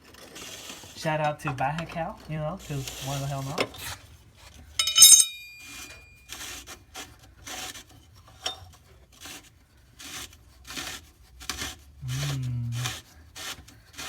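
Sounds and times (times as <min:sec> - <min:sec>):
hand rubbing strokes: 0:00.5 - 0:04.0, 0:11.6 - 0:14.0.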